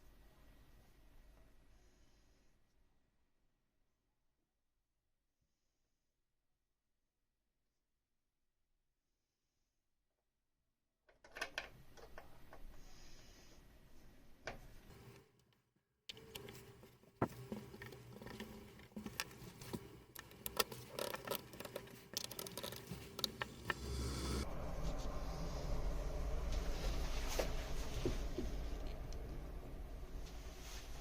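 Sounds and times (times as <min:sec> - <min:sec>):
hands handling parts and cables: 0:16.1 - 0:23.8.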